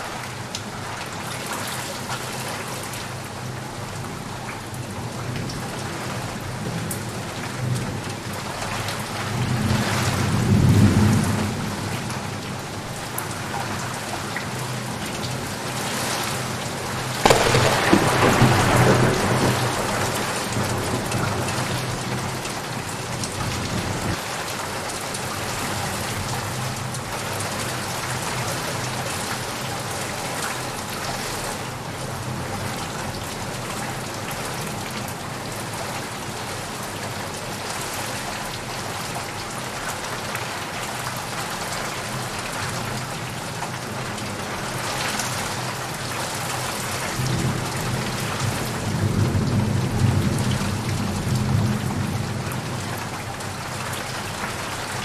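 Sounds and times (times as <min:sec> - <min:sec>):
steady rain falling: 0:00.0 - 0:55.0
sharp thunderclap: 0:17.3 - 0:22.4
low roll of thunder: 0:17.3 - 0:24.2.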